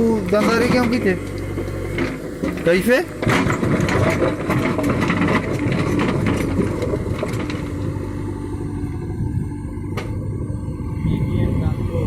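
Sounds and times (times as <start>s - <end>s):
diesel engine running: 0.0s - 12.0s
clatter of knocks and rattles: 0.2s - 7.9s.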